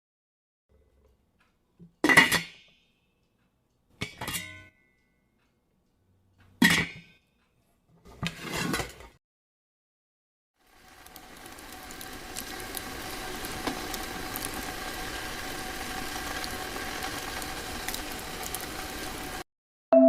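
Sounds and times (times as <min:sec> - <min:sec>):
metallic clank of kitchenware: 0:04.0 - 0:05.2.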